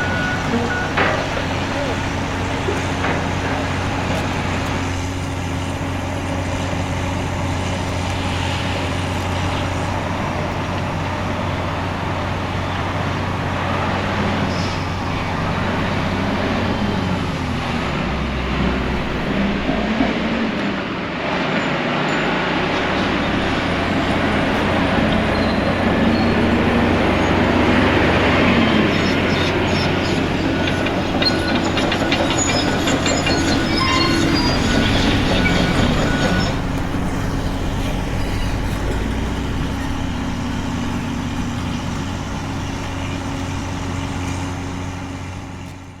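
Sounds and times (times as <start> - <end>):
heavy diesel engine running: 0.0 - 46.0
loud grinding and scraping: 13.2 - 45.7
high-pitched metallic squeals: 22.1 - 44.0.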